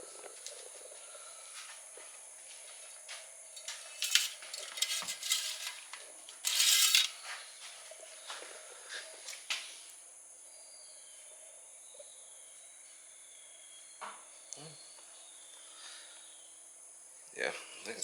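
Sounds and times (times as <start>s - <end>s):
dipstick rasping scrape: 3.6s - 7.2s.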